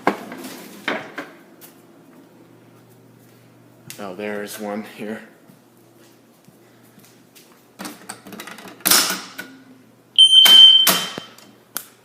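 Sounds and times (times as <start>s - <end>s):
fire alarm tone: 10.2s - 11.4s.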